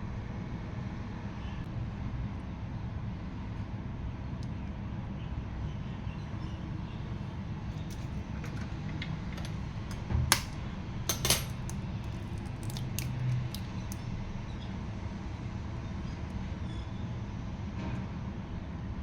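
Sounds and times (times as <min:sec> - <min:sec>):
kitchenware clinking: 0:07.8 - 0:13.6.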